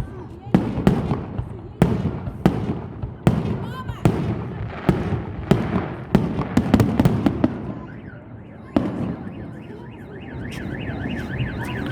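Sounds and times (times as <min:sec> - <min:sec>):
fireworks bursting with bangs: 0:00.0 - 0:11.9
car alarm wailing: 0:06.9 - 0:11.9.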